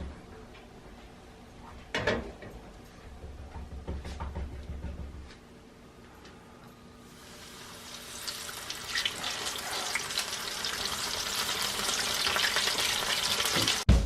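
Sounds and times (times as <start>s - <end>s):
chicken sizzling in hot oil: 7.1s - 13.9s.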